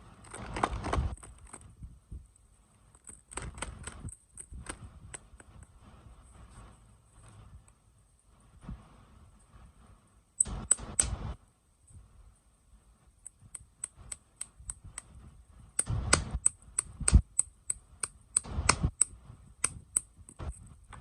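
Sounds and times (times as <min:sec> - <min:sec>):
plastic packaging clicks: 0:00.2 - 0:01.7, 0:02.9 - 0:05.3
plastic crinkling: 0:00.2 - 0:01.8.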